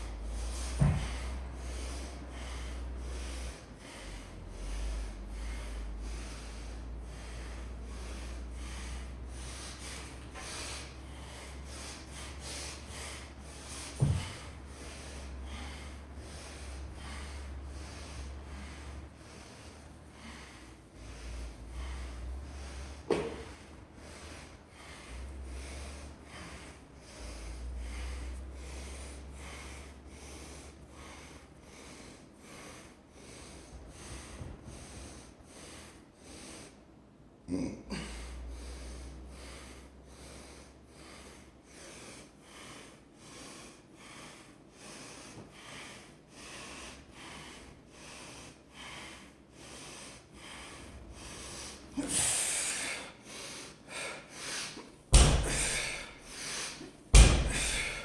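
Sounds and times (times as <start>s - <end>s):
person breathing hard: 0.0s - 58.0s
thud: 55.1s - 56.1s, 57.1s - 58.0s.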